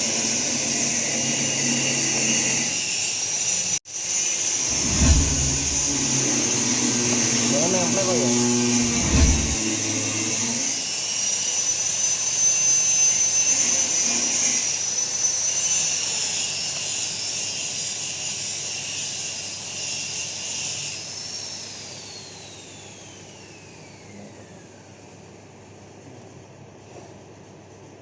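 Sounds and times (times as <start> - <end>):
machine motor whining: 0.0 - 14.8.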